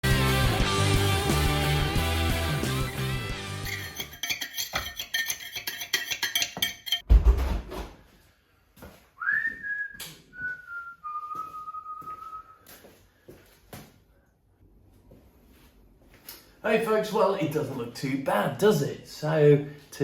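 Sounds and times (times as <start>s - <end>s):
rock music with guitar: 0.0s - 3.7s
low thump: 7.1s - 7.9s
person whistling: 9.2s - 12.7s.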